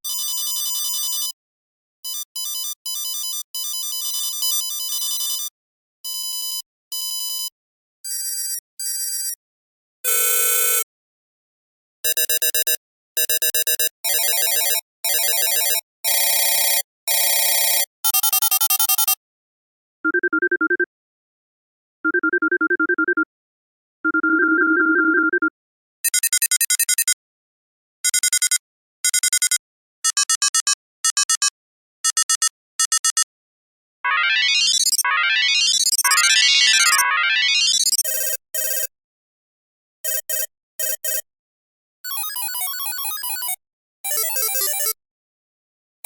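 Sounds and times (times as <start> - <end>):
electronic phone ringtone: 13.7 - 19.2, 24.1 - 25.5, 34.1 - 38.9, 42.1 - 45.0
electronic ringtones: 34.1 - 38.0.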